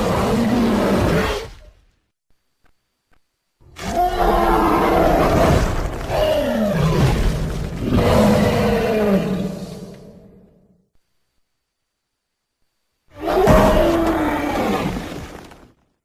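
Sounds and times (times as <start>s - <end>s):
dinosaur roar: 0.0s - 1.6s, 3.7s - 10.6s, 13.1s - 15.3s.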